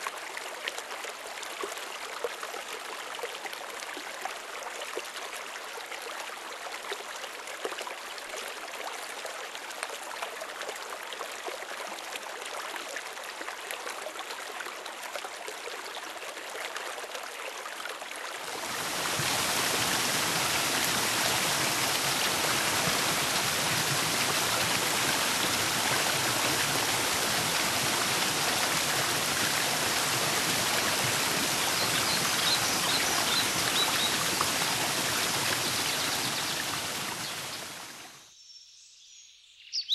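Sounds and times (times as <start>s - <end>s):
stream rushing over rocks: 18.3s - 38.1s.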